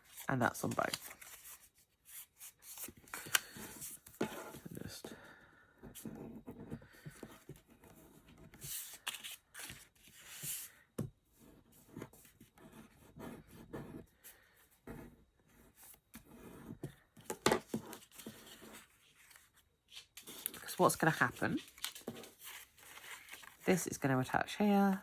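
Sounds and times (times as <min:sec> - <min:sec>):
cardstock rustling and scraping: 0:00.0 - 0:04.8, 0:08.2 - 0:10.7, 0:15.7 - 0:23.8.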